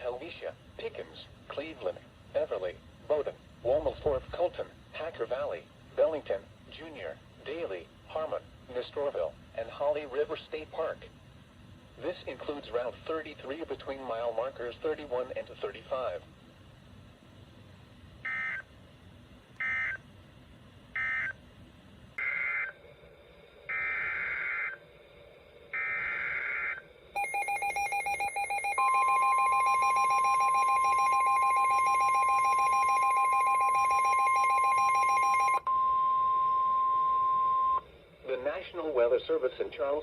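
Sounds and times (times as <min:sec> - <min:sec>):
steady high alert tone: 0:22.2 - 0:35.7.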